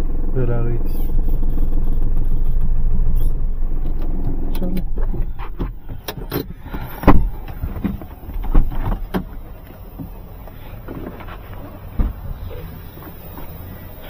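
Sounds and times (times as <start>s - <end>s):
car engine rumble from inside: 0.0s - 14.0s
loud thump: 4.9s - 9.3s, 12.0s - 12.4s.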